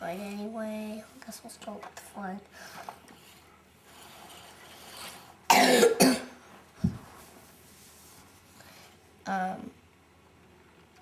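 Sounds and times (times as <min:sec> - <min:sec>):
child coughing: 0:05.5 - 0:06.4.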